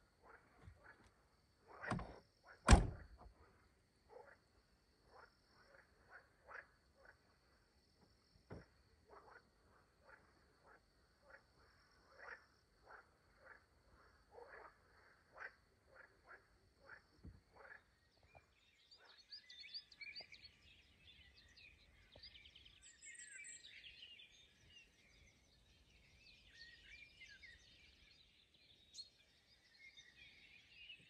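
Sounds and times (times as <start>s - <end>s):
frogs croaking: 4.0s - 19.6s.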